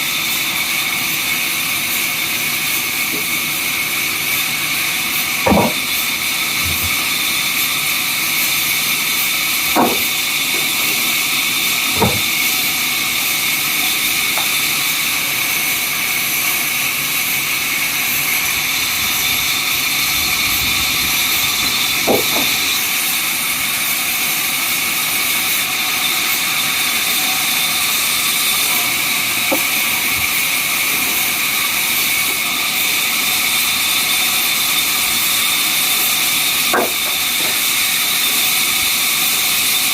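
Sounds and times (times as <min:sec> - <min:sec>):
sawmill saw whining: 0:00.0 - 0:39.9
short knocks: 0:05.5 - 0:05.9, 0:09.7 - 0:10.8, 0:11.9 - 0:12.4, 0:21.6 - 0:22.6.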